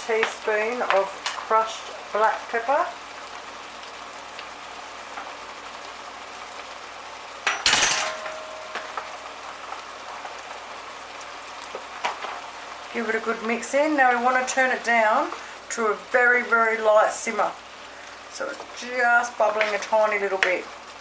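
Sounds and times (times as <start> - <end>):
sauce sizzling in frying pan: 0.0 - 21.0
metal utensil clattering on pan: 7.4 - 9.2.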